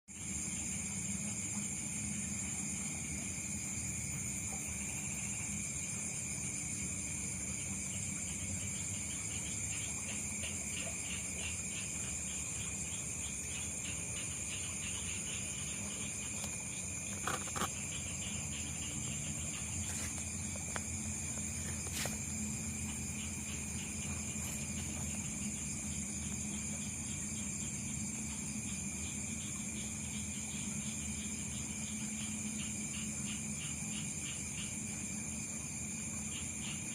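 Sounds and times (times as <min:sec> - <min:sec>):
fast pulsing insect trill: 0:00.1 - 0:36.9
insects shrilling: 0:10.8 - 0:27.3.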